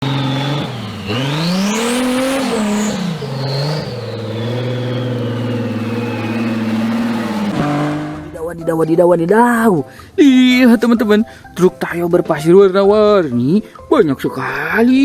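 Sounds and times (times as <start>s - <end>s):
car engine revving: 0.0s - 8.6s.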